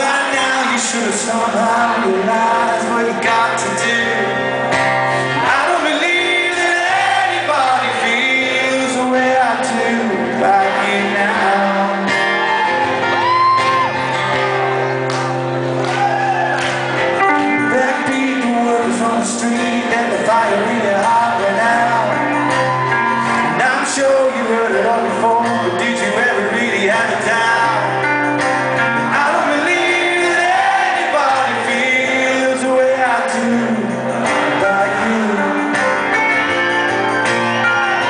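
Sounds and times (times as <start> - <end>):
live rock band with singing: 0.0 - 38.0
audience shouting and whooping: 10.4 - 17.3, 21.8 - 24.3, 36.6 - 38.0.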